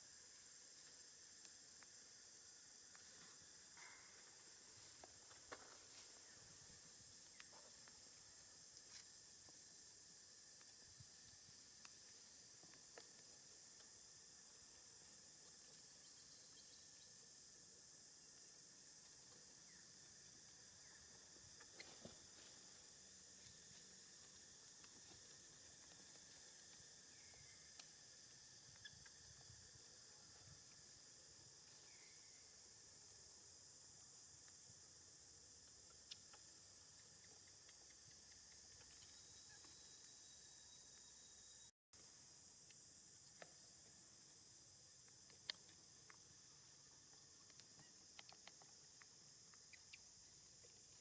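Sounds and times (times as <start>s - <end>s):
faint high-pitched hiss: 0.0s - 51.0s
high-pitched insect chorus: 0.0s - 51.0s
small clicks and ticks: 35.6s - 40.2s, 44.9s - 51.0s.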